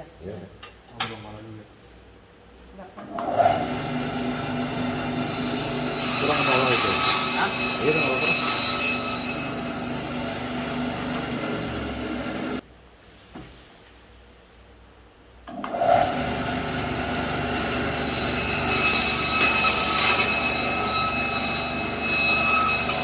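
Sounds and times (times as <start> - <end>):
band saw whining: 3.5 - 12.6, 16.3 - 23.0.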